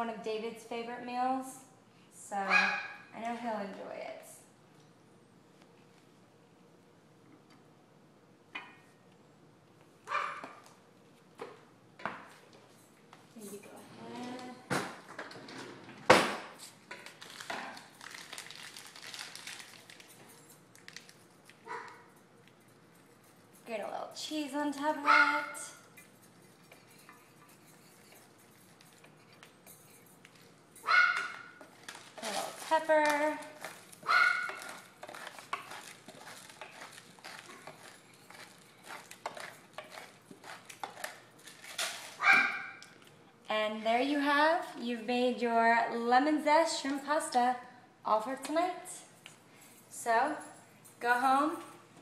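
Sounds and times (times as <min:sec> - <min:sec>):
pepper mill grinding: 0:16.6 - 0:25.0, 0:25.8 - 0:42.2
utensils clicking and scraping dish: 0:25.9 - 0:42.2.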